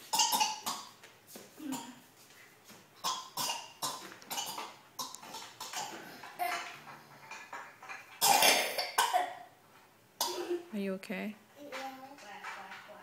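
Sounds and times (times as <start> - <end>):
person coughing: 8.2 - 9.4.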